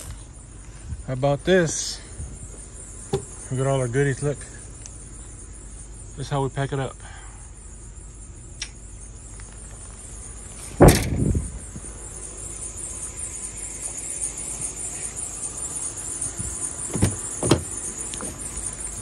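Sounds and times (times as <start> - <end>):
steady hiss: 0.0 - 19.0
loud thump: 10.7 - 11.7, 16.4 - 17.7.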